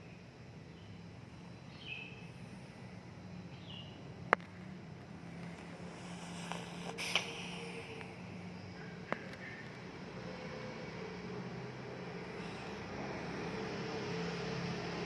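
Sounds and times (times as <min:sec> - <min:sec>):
cat snoring: 0:05.6 - 0:08.2, 0:12.2 - 0:13.6.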